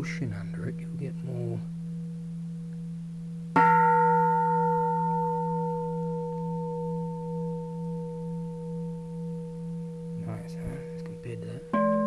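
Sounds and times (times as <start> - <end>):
temple bell ringing: 3.6 - 12.0.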